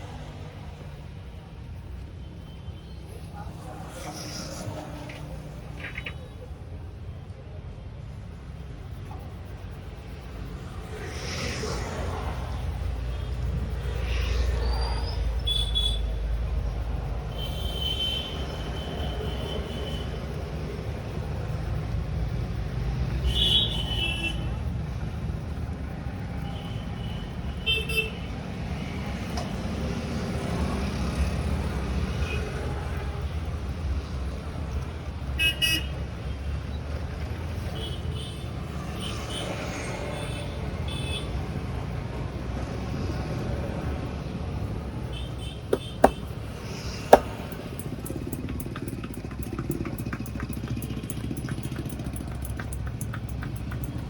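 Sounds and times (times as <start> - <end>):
road traffic rumble: 0.0 - 54.0.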